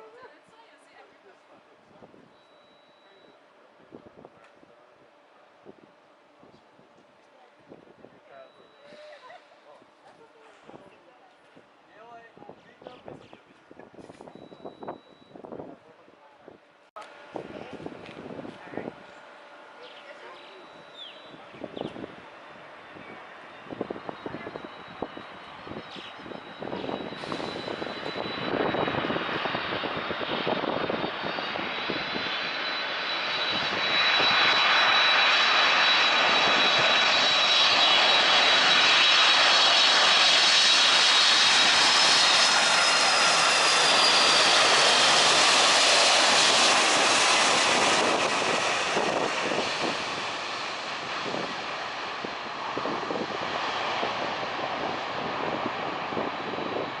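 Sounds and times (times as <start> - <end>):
jet engines passing close: 17.0 - 57.0.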